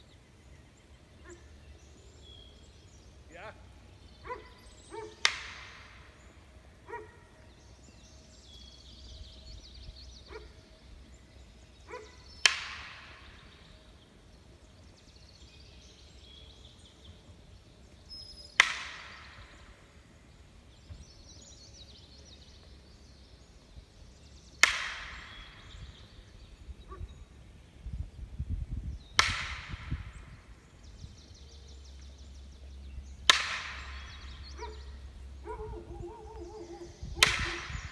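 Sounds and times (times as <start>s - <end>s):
loud sharp cracks with echo: 4.6s - 7.0s, 12.3s - 13.7s, 18.5s - 20.1s, 24.6s - 26.1s, 29.2s - 30.6s, 33.2s - 34.6s, 37.1s - 37.9s.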